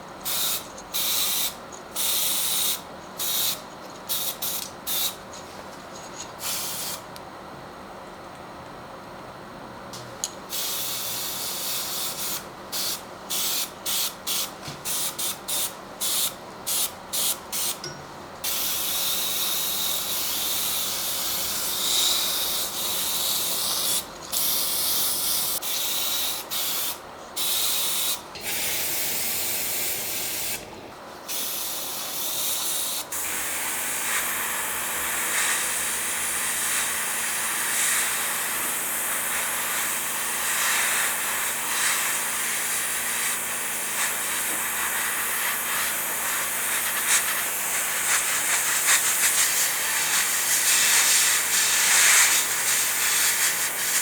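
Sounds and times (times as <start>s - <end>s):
paint spray hissing: 0.2s - 5.2s, 10.5s - 17.8s, 18.4s - 30.6s, 36.6s - 54.0s.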